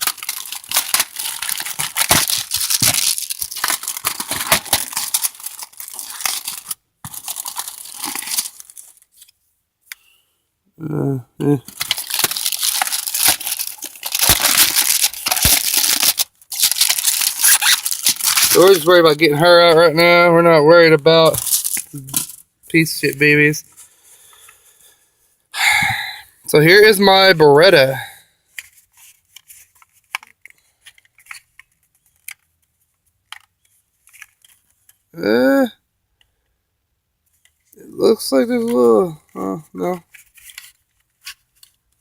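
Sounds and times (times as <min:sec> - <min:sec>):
packaging crinkling and tearing: 0:00.0 - 0:09.3, 0:11.6 - 0:19.1, 0:21.3 - 0:22.4.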